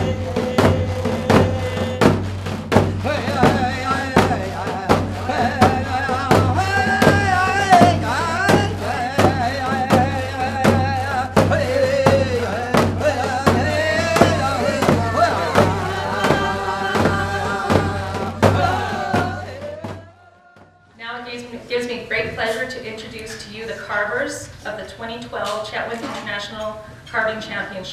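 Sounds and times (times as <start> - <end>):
music with drumbeat and melody: 0.0 - 20.1.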